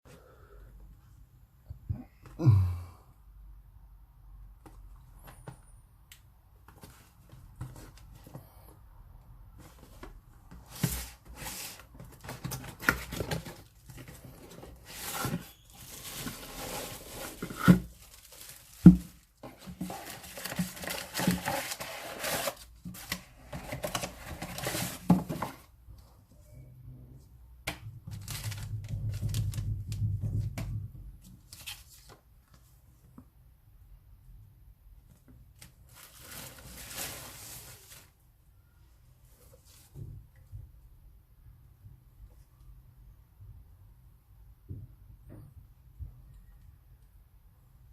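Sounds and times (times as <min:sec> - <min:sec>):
wrapping crinkling: 0:14.9 - 0:23.2, 0:35.9 - 0:38.1.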